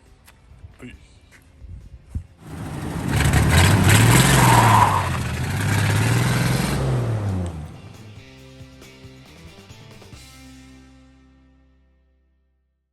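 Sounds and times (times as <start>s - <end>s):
vehicle engine revving: 2.4s - 8.1s.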